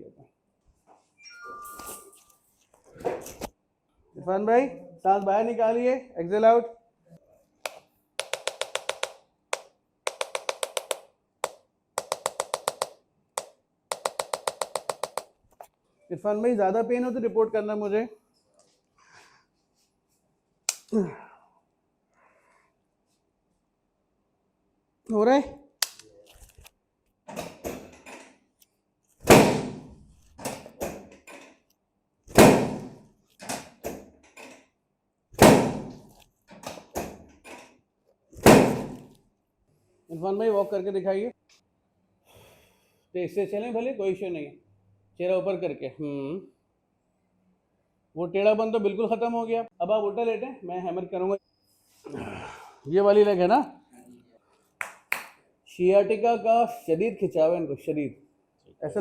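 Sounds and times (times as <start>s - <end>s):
chiropractic hammer tapping: 7.6s - 15.3s.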